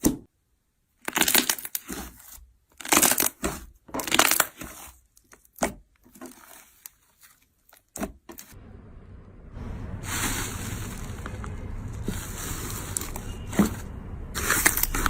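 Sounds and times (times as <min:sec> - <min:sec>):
slime crunching and crackling: 0:01.0 - 0:08.5, 0:10.0 - 0:15.0
low rumble: 0:08.6 - 0:15.0.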